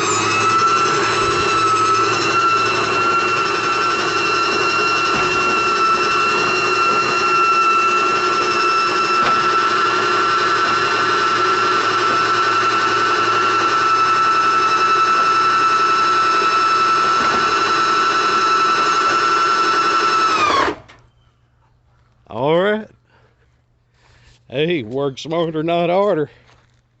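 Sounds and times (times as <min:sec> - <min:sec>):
electric winch motor whining: 0:00.0 - 0:21.2.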